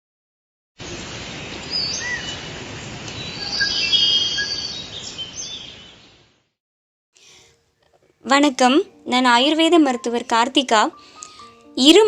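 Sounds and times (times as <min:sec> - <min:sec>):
birds chirping: 0:01.4 - 0:06.3.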